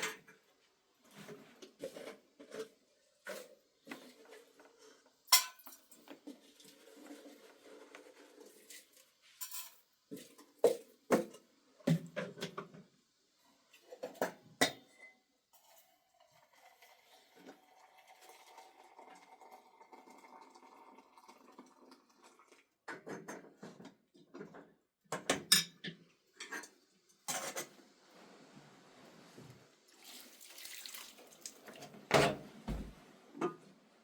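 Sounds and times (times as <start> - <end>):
objects knocking and clattering: 32.1 - 33.6.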